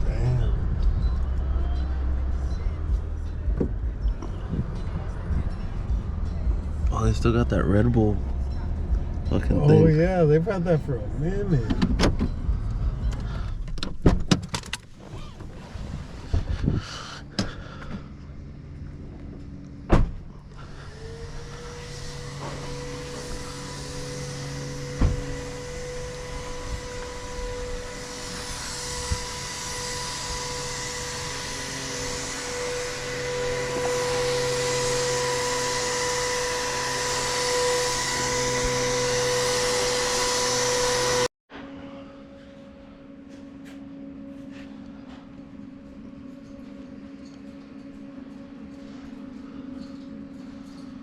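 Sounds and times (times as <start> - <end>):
motor humming: 20.5 - 41.3
hiss: 20.7 - 33.1.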